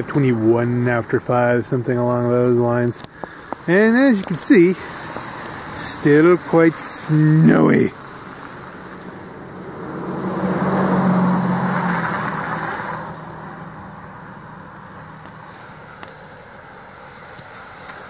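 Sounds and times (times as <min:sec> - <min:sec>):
faint background hiss: 0:00.0 - 0:09.6
car driving past on snow: 0:04.3 - 0:18.0.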